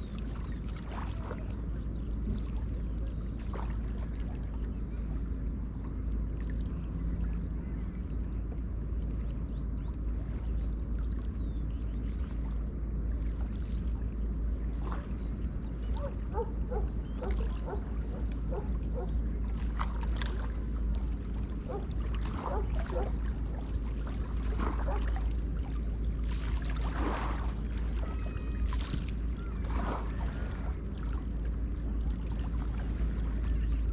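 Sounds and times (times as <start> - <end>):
water lapping against shore: 0.0 - 33.9
wind rumble on microphone: 0.0 - 33.9
small splashes: 15.9 - 33.8.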